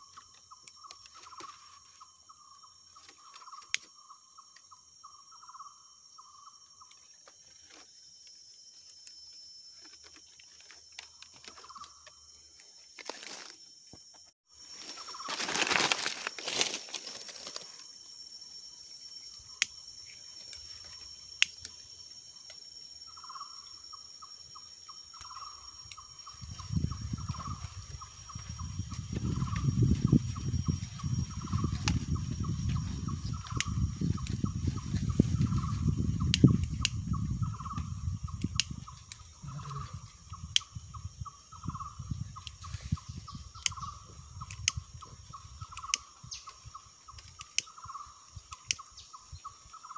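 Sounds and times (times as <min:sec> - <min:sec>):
high insect drone: 0:00.0 - 0:49.9
low rumble on microphone: 0:26.4 - 0:45.7.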